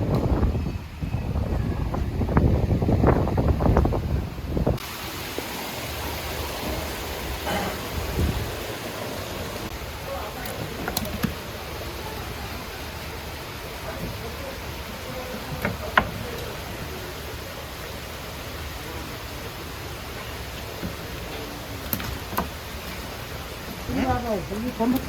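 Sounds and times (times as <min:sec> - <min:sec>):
background hiss: 0:03.4 - 0:25.0
faint indistinct voices: 0:09.7 - 0:18.0.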